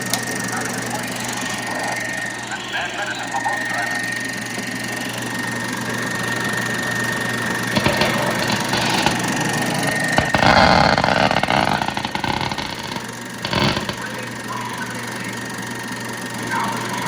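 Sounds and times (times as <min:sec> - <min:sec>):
movie projector clattering: 0:07.7 - 0:14.1.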